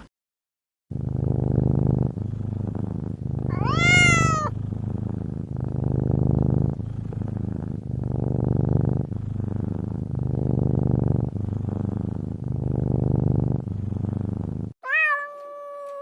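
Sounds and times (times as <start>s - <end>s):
cat purring: 0.9s - 16.0s
cat meowing: 3.5s - 4.5s, 14.8s - 16.0s.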